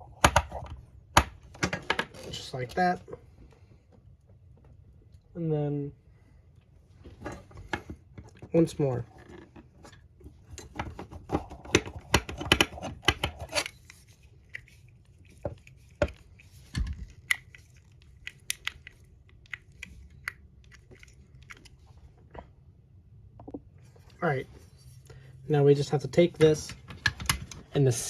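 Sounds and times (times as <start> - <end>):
plastic parts clicking and tapping: 26.6 - 27.7.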